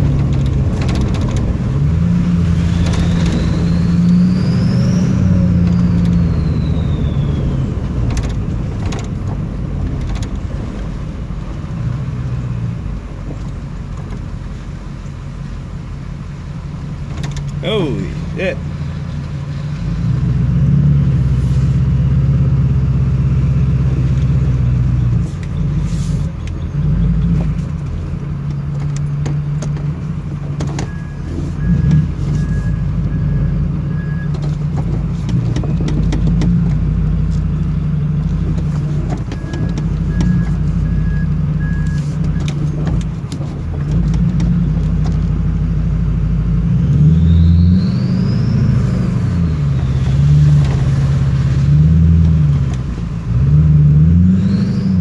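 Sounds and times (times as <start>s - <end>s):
pickup truck diesel engine running: 0.0s - 47.2s
turbo whistling: 2.4s - 8.1s, 30.8s - 34.4s, 47.0s - 50.4s, 54.2s - 55.0s.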